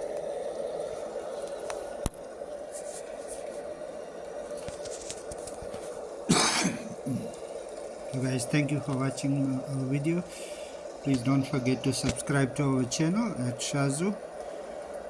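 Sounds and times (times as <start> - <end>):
background hiss: 0.0 - 15.0
person coughing: 6.3 - 7.4.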